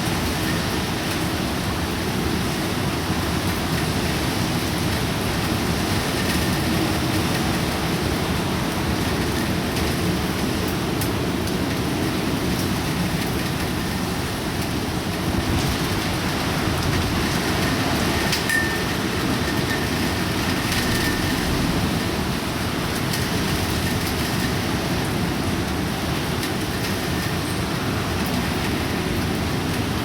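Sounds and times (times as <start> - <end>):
rain ticking on surfaces: 0.0 - 30.0
wind and heavy rain rushing: 0.0 - 30.0.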